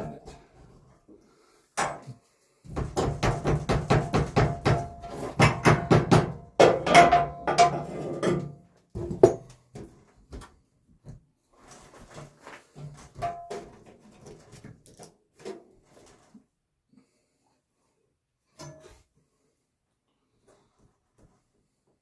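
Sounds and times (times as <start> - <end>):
hard knocks on wood: 2.7 - 6.8.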